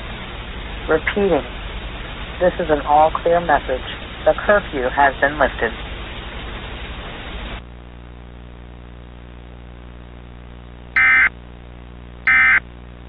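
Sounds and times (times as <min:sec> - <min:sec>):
low steady hum: 0:00.0 - 0:13.0
warbling digital data tones: 0:11.0 - 0:11.3.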